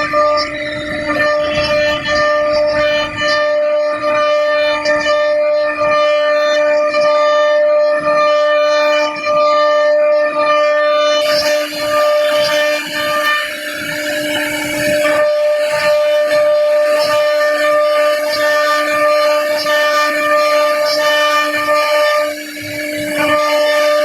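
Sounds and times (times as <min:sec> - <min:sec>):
router spindle high-pitched whine: 0:00.0 - 0:24.0
rough wood cutting noise: 0:11.1 - 0:24.0.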